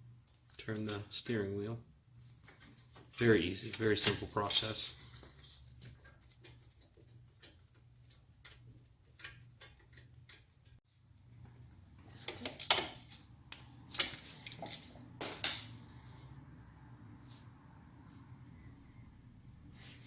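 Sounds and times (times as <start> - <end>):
metal tools clinking: 14.0 - 15.8.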